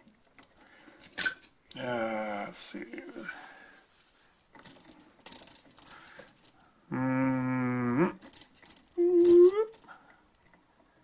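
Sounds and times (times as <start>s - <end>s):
pliers clicking and rattling on metal: 0.4s - 1.6s, 4.6s - 6.7s, 8.2s - 10.5s.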